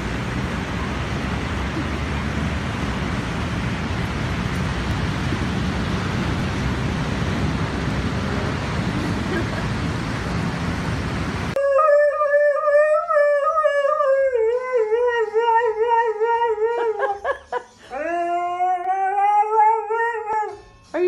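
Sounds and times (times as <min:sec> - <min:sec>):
dog howling: 0:11.6 - 0:17.2, 0:17.9 - 0:20.6.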